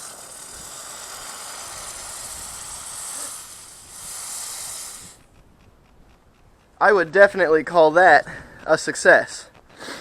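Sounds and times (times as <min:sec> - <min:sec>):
hot steel hissing with steam: 0:00.0 - 0:05.2.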